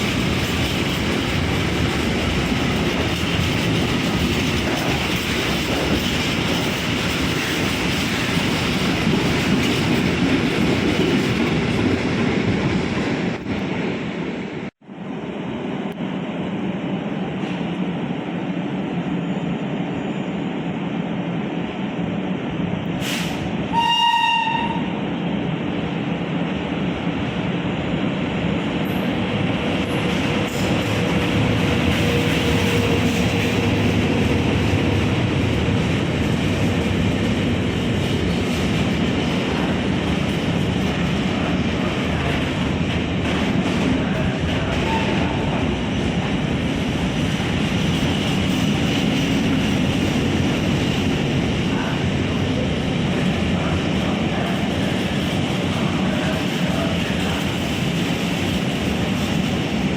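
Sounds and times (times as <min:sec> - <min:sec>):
train rumbling on rails: 0:00.0 - 0:59.9
train horn blast: 0:23.7 - 0:25.0, 0:44.8 - 0:45.4.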